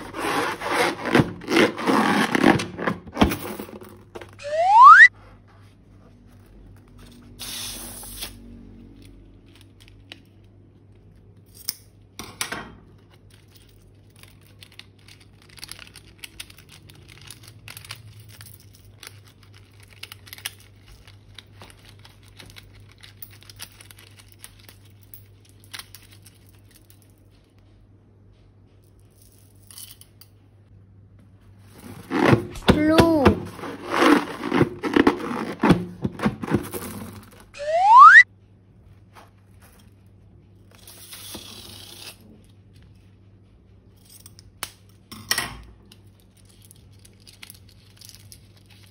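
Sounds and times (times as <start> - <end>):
plastic tearing: 33.5 - 37.4.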